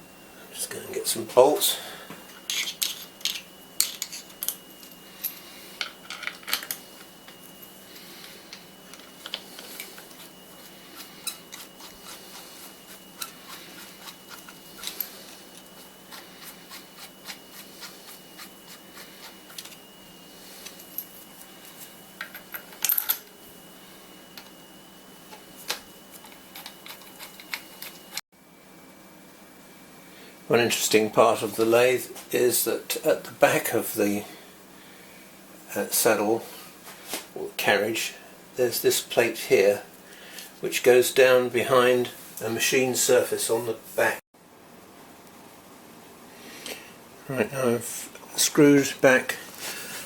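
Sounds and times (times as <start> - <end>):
faint steady whine: 0.0 - 50.0
metal parts clinking: 2.5 - 5.4, 6.0 - 6.8.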